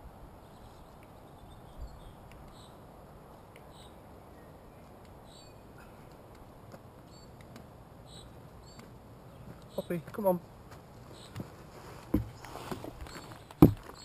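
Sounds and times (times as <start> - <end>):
woodland background hiss: 0.0 - 13.7
small bird chirping: 0.4 - 2.8, 3.5 - 6.0, 7.0 - 10.1, 11.1 - 11.4, 12.3 - 14.0
small thump: 12.1 - 14.0.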